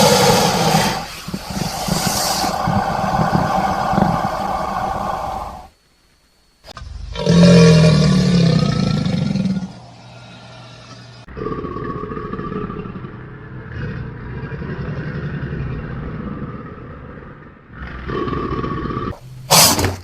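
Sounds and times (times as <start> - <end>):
crocodile calling: 0.0 - 5.8.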